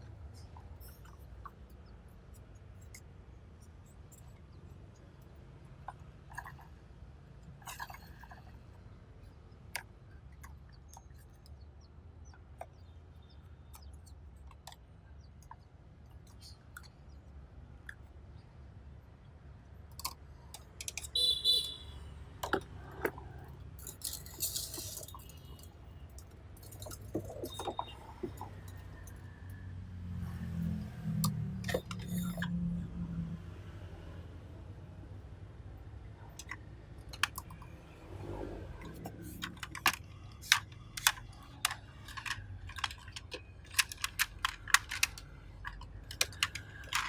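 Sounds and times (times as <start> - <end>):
plastic toys clicking and rattling: 7.4 - 15.6, 19.9 - 29.6, 30.4 - 32.7, 36.2 - 38.0, 38.8 - 47.0.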